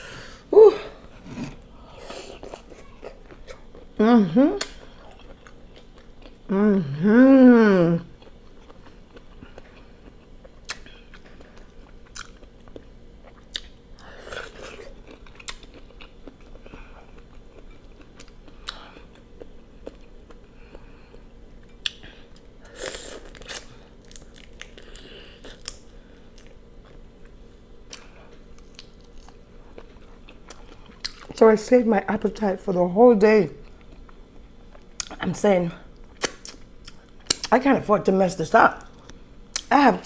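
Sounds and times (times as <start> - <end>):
chewing and biting food: 1.1 - 4.0, 4.6 - 6.5, 8.1 - 31.4.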